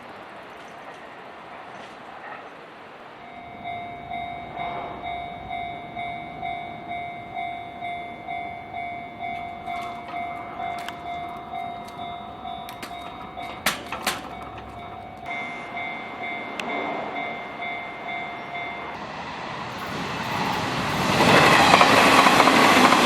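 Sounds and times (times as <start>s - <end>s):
level crossing warning bell: 3.1s - 23.0s.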